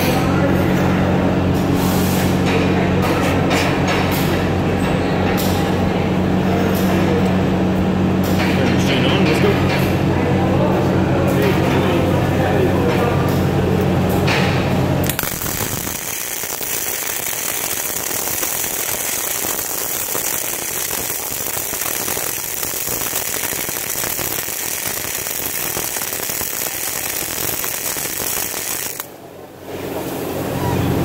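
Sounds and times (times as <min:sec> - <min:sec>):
welding arc crackling: 0:15.0 - 0:29.2.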